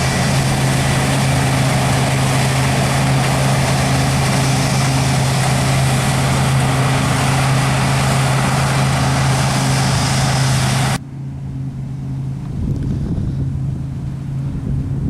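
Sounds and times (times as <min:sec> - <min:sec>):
loud even hiss: 0:00.0 - 0:11.0
diesel machine deep hum: 0:00.0 - 0:15.0.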